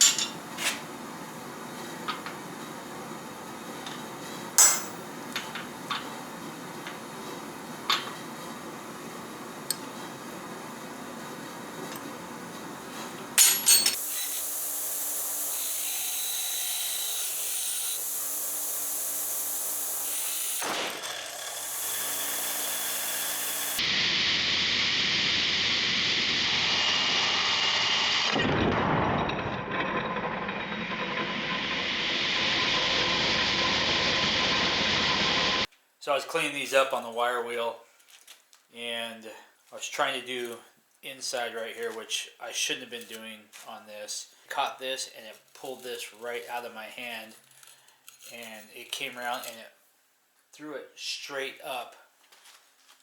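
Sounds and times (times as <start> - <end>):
metal clinks and knocks: 4.6 - 5.1, 13.4 - 14.0.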